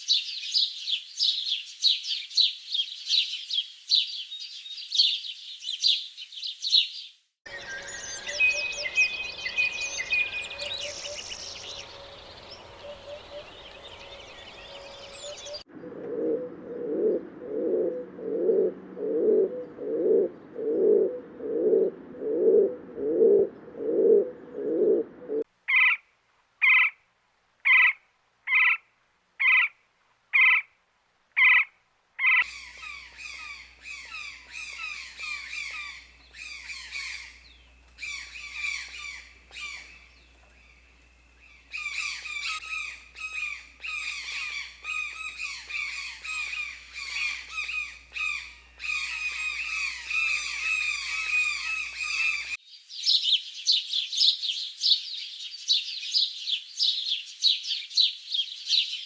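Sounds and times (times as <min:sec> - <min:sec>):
twittering bird chorus: 0:00.0 - 0:25.4, 0:32.4 - 0:59.0
short high bird calls: 0:07.5 - 0:15.7, 0:32.4 - 0:52.6
low bird call: 0:07.5 - 0:25.4, 0:32.4 - 0:52.6.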